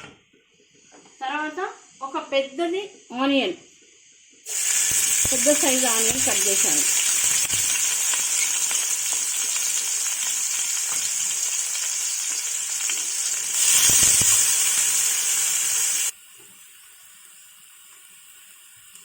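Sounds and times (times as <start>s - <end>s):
faint hiss: 0.7s - 19.0s
onion sizzling in hot oil: 4.4s - 19.0s.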